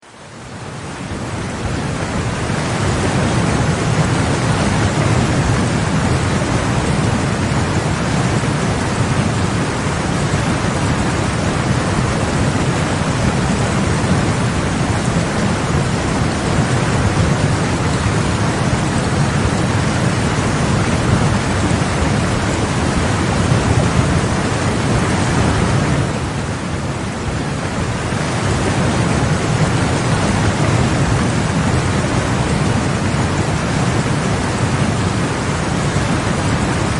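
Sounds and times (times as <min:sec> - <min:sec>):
river rapids rushing: 0:00.0 - 0:36.9.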